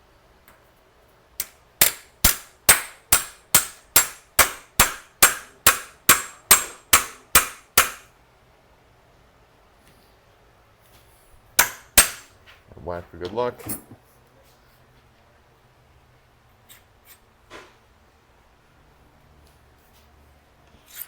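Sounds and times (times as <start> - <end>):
hammer striking metal: 1.4 - 8.1, 11.6 - 12.3.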